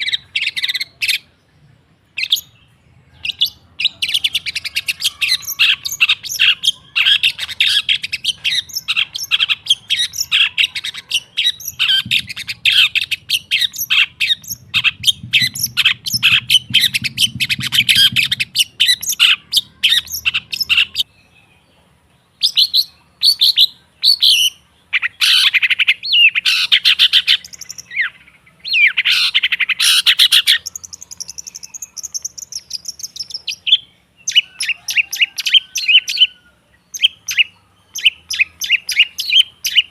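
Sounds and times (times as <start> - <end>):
bird singing chattering notes: 0.0 - 39.9.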